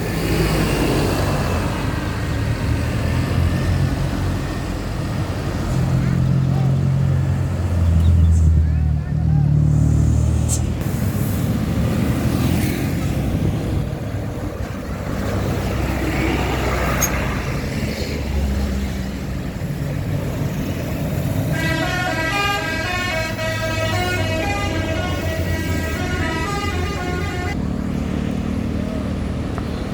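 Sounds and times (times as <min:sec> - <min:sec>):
bus engine and road noise: 0:00.0 - 0:29.9
musical bus horn tune: 0:21.4 - 0:27.6.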